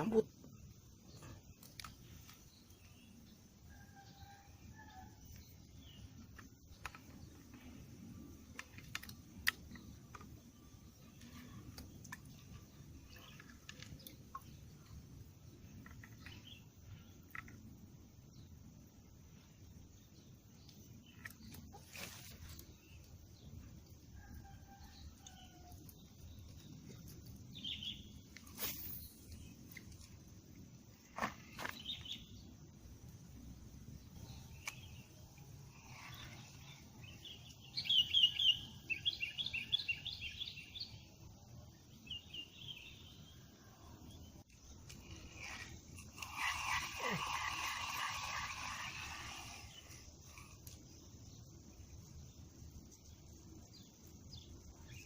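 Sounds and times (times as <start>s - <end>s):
faint bird chirps: 0.0s - 15.0s, 34.0s - 41.1s.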